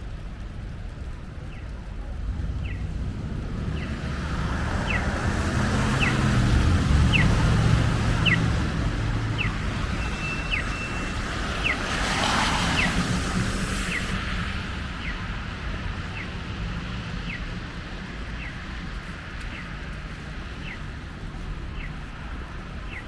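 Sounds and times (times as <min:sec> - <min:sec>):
vehicle passing: 0:02.1 - 0:18.3.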